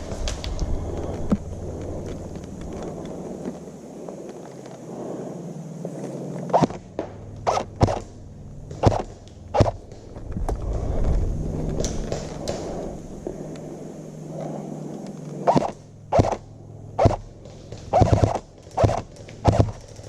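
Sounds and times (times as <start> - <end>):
low rumble: 0.0 - 20.0
airsoft guns firing: 7.4 - 8.1, 8.7 - 10.0, 15.5 - 16.4, 17.0 - 20.0.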